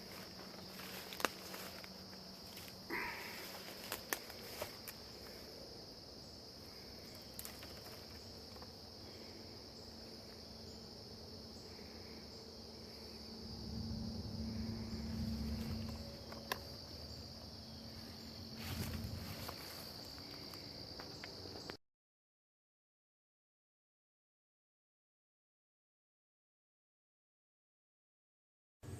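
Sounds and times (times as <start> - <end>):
insects trilling: 0.0 - 21.8
low rumble: 12.7 - 19.8.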